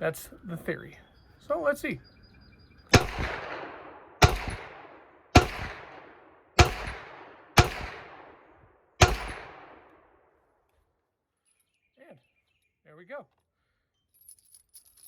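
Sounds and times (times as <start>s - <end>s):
gunshots with long echo: 2.9s - 10.4s.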